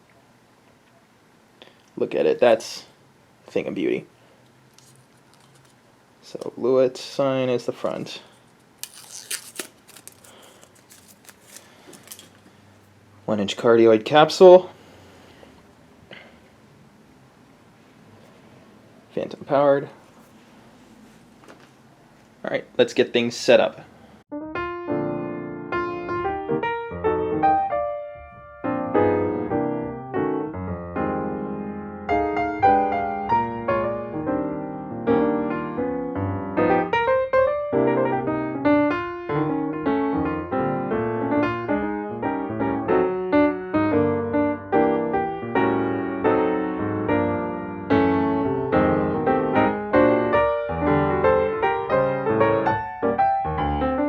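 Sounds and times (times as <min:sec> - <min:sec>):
piano music: 0:24.3 - 0:54.0.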